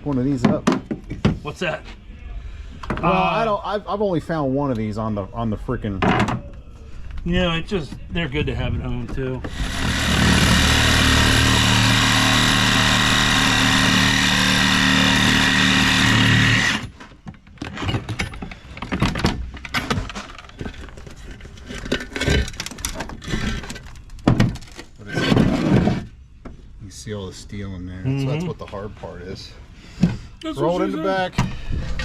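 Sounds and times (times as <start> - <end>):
knocks and clanks: 9.0 - 26.6
power saw cutting: 9.5 - 17.0.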